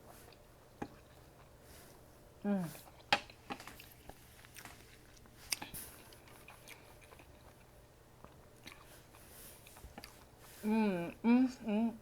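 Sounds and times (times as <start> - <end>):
person chewing and biting food: 2.8 - 10.4.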